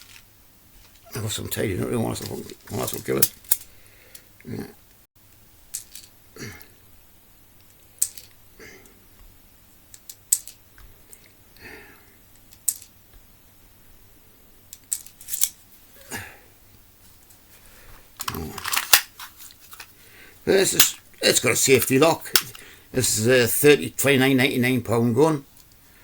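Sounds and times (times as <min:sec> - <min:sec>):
pistol mechanism clicks: 0:18.6 - 0:19.1, 0:22.3 - 0:22.6.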